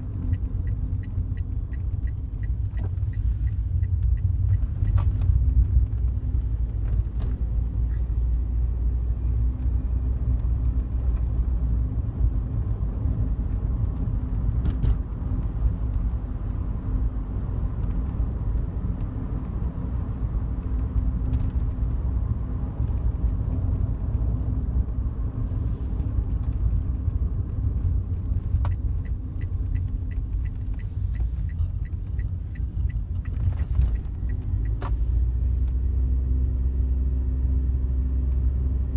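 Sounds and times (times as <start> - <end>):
road and engine rumble: 0.0 - 38.9
rattle clicks in car cabin: 0.2 - 7.5, 27.8 - 35.0.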